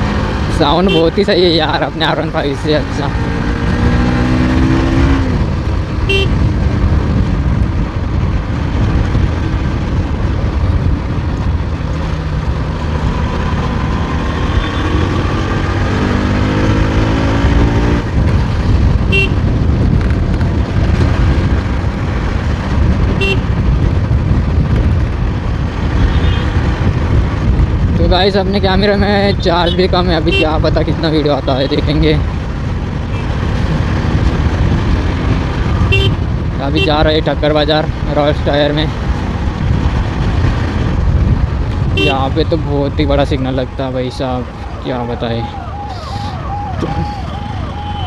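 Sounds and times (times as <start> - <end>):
motorcycle engine accelerating: 0.0 - 28.0, 32.3 - 38.2
wind rumble on microphone: 0.0 - 48.0
horn toots: 0.8 - 1.2, 6.0 - 6.4, 19.1 - 19.4, 23.2 - 23.5, 35.8 - 37.0, 41.9 - 42.3.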